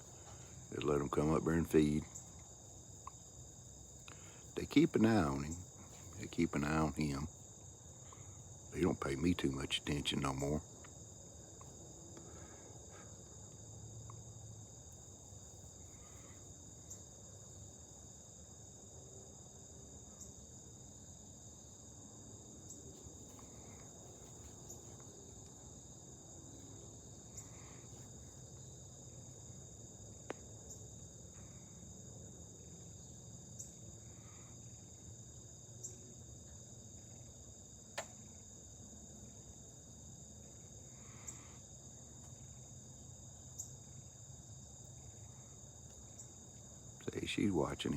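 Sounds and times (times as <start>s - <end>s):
insects chorus: 0.0s - 47.9s.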